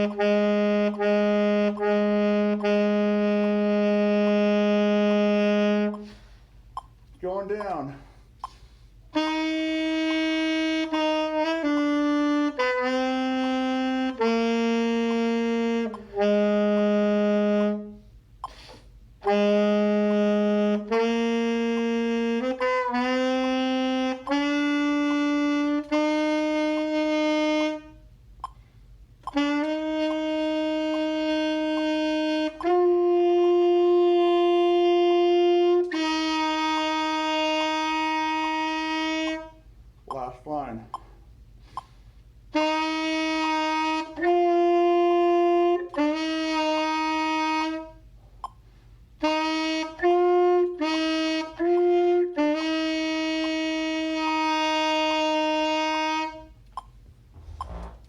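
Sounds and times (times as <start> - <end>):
saxophone long held notes: 0.0 - 6.4, 9.1 - 18.1, 19.2 - 28.1, 29.2 - 40.3, 42.5 - 48.2, 49.2 - 56.6.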